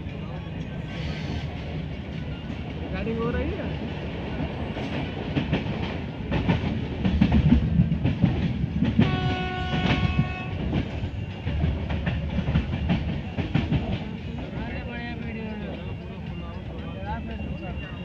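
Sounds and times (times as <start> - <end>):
train wheels clattering: 0.0 - 18.0
train horn: 9.0 - 10.8.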